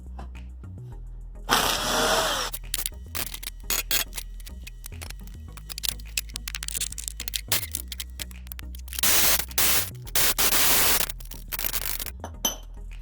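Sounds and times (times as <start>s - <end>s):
hand tools clicking: 2.5s - 12.1s
metal clinking: 2.5s - 12.1s.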